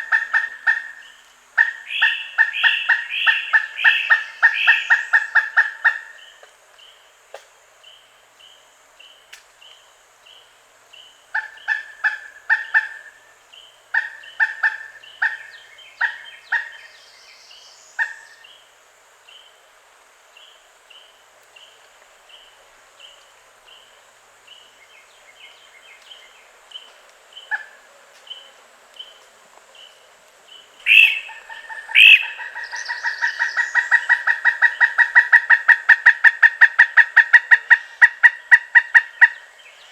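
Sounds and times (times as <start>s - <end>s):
woodpecker calling loud kuk notes: 0.0s - 6.5s, 11.3s - 17.0s, 30.8s - 39.9s.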